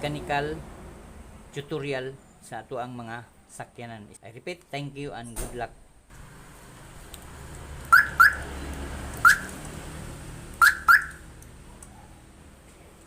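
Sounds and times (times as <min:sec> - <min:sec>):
car alarm chirps: 0:07.9 - 0:08.5, 0:09.2 - 0:09.5, 0:10.6 - 0:11.2.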